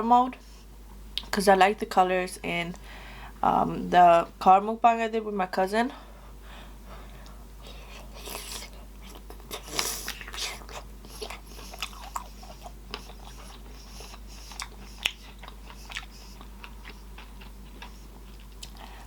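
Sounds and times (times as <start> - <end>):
person chewing with wet smacking: 7.2 - 19.0.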